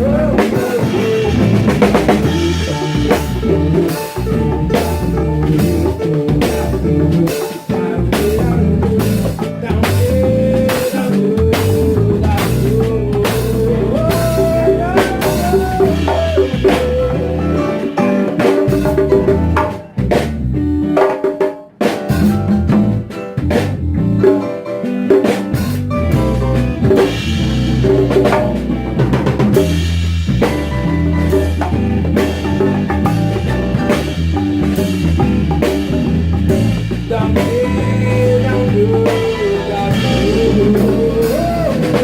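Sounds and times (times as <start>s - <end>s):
melodic lead line: 0.0s - 10.7s
drum kit and percussion groove: 0.0s - 42.0s.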